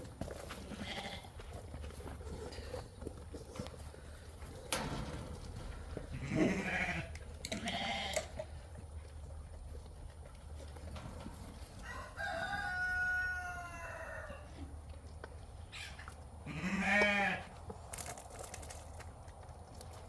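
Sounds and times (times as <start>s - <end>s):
sheep or goat bleating: 0.6s - 1.4s, 6.1s - 8.4s, 16.4s - 17.5s
rooster crowing: 11.8s - 14.5s.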